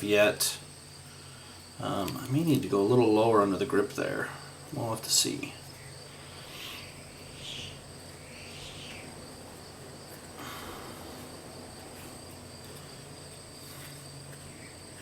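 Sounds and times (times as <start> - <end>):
faint high-pitched whine: 0.0 - 15.0
soft rubbing and brushing: 11.0 - 14.7.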